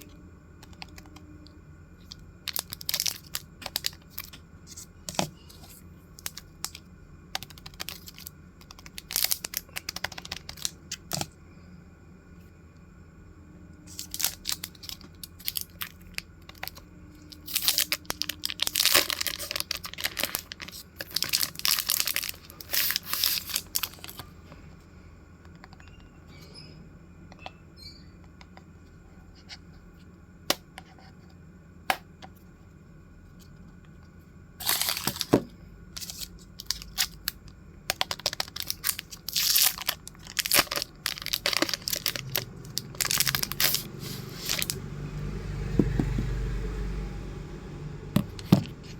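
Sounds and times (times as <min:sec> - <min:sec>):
packaging tearing and crinkling: 0:02.5 - 0:04.3, 0:07.6 - 0:11.2, 0:13.9 - 0:16.8, 0:17.4 - 0:24.2, 0:34.6 - 0:35.4, 0:36.0 - 0:37.4, 0:38.0 - 0:44.8.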